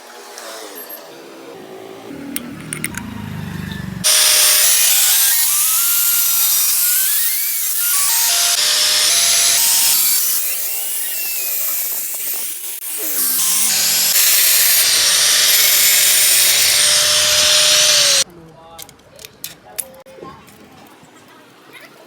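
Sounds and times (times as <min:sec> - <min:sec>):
power tool grinding: 0:02.1 - 0:18.2
clicks: 0:02.3 - 0:03.1.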